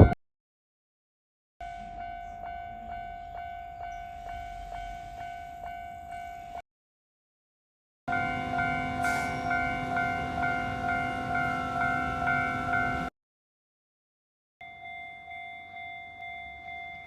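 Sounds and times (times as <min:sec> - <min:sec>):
level crossing warning bell: 0:01.6 - 0:06.6, 0:08.1 - 0:13.1, 0:14.6 - 0:17.0.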